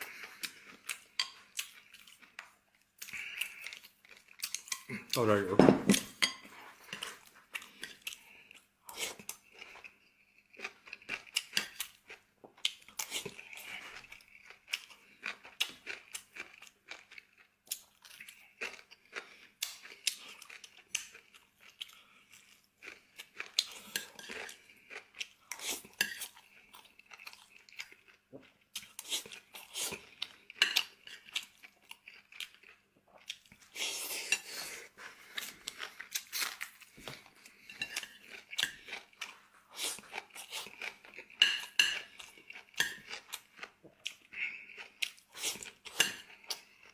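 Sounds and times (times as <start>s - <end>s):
chewing and crunchy bites: 0.0s - 5.2s, 6.9s - 46.9s
utensils clinking against bowl: 41.4s - 42.0s.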